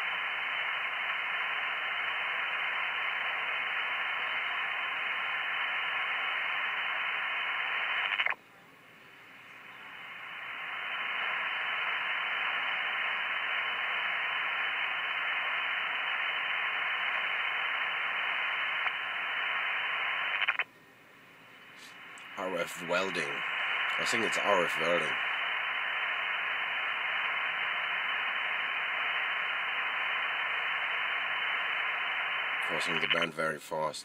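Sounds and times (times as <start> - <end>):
radio interference hiss: 0.0 - 8.4, 9.0 - 20.7, 21.4 - 34.0.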